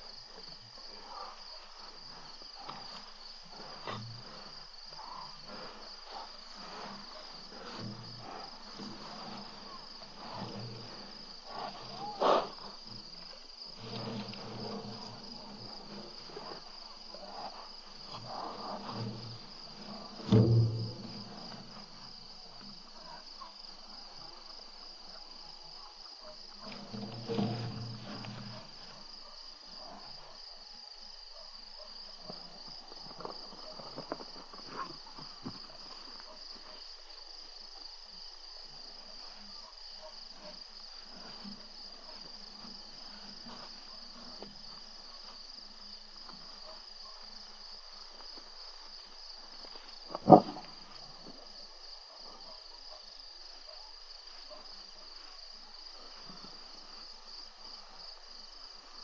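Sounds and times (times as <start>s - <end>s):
crickets trilling: 0.0s - 59.0s
soft knocks and rustles: 18.0s - 22.7s.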